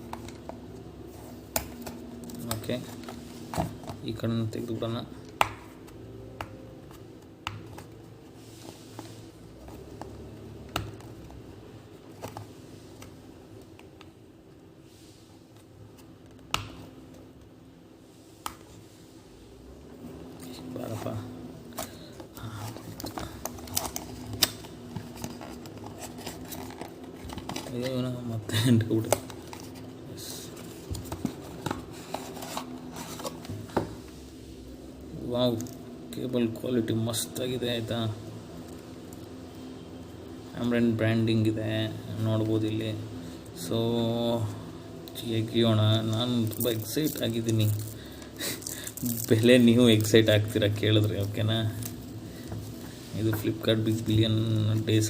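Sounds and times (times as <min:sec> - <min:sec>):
packaging rustle: 0:20.9 - 0:28.0.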